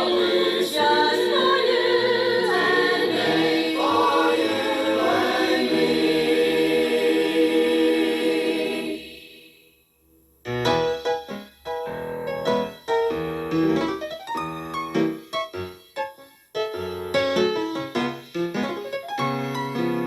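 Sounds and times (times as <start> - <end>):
gospel choir holding a chord: 0.0 - 9.8
piano playing chords: 10.5 - 20.0.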